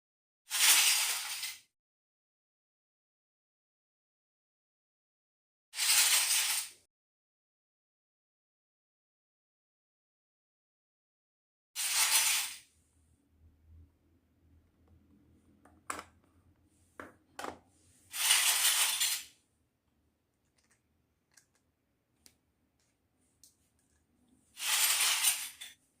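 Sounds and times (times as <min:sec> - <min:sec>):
toy pieces clicking and clinking: 0:00.5 - 0:01.6, 0:05.8 - 0:06.8, 0:11.8 - 0:12.6, 0:18.1 - 0:19.4, 0:24.6 - 0:25.8.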